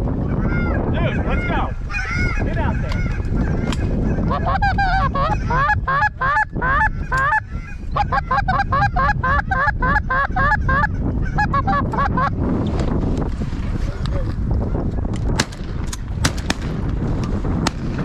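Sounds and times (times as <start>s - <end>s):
wind noise on microphone: 0.0s - 18.0s
geese honking: 1.4s - 12.3s.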